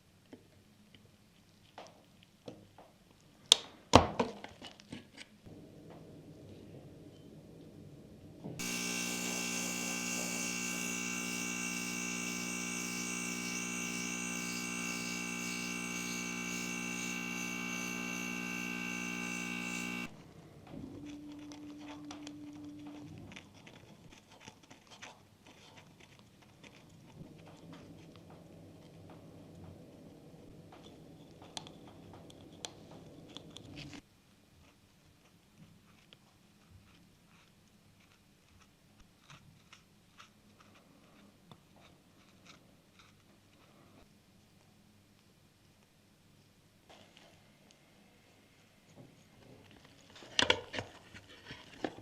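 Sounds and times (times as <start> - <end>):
short low hum: 8.6 - 20.2
small electric motor running: 8.6 - 20.2.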